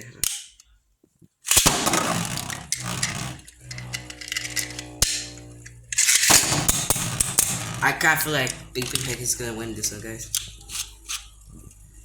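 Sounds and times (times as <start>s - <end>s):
sharp click: 1.5s - 7.8s
spinning tops whirring: 1.5s - 12.0s.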